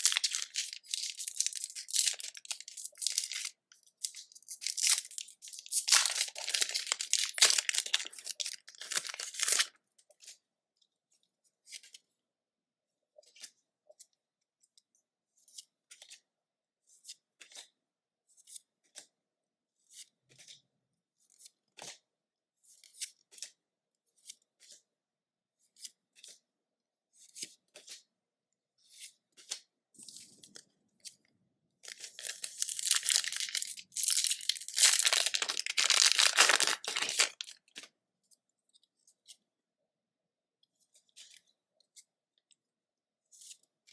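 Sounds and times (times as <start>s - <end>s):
foil wrapper crinkling and tearing: 0.0s - 9.7s, 31.8s - 37.7s.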